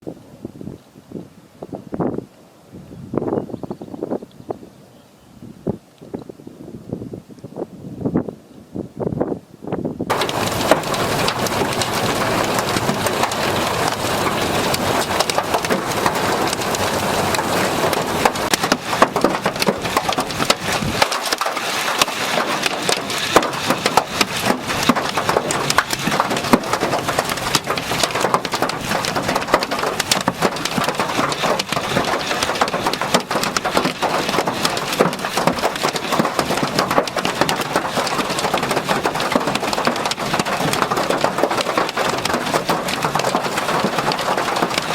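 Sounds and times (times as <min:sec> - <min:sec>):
hail clattering on hard surfaces: 0:10.1 - 0:44.9.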